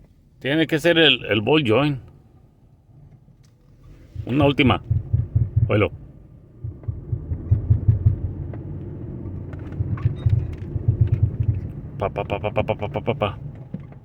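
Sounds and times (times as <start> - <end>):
car interior low rumble: 0.0 - 14.0
knocks and clunks from underneath: 4.0 - 5.9, 6.6 - 12.0, 13.4 - 14.0.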